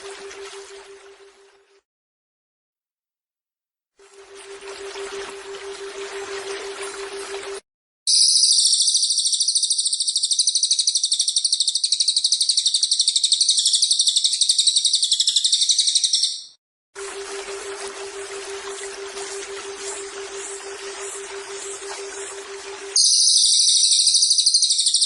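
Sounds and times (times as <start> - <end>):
bird trilling: 8.1 - 16.6, 23.0 - 25.0.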